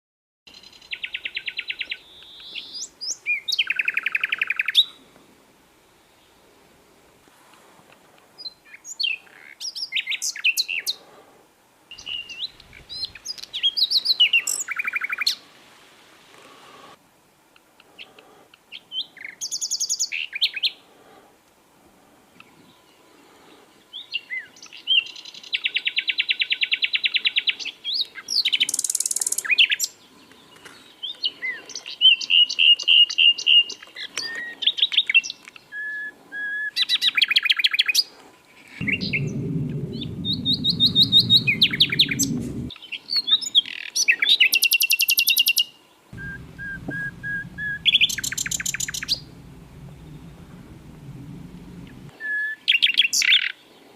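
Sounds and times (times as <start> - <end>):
low rumbling noise: 38.8 - 42.7, 46.2 - 52.2.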